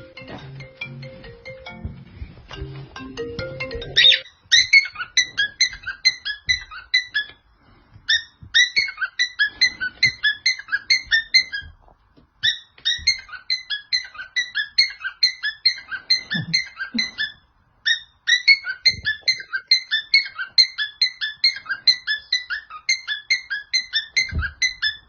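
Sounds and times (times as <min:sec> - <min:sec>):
cockatiel whistling high chirps: 0:04.0 - 0:07.4, 0:08.1 - 0:11.8, 0:12.4 - 0:25.0.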